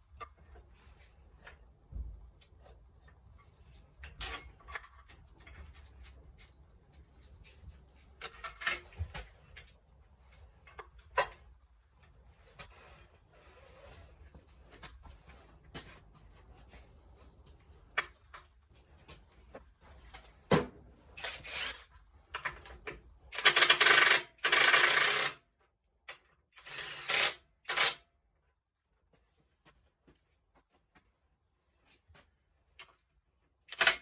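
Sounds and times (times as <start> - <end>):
metal tools clinking and knocking: 3.2 - 9.8.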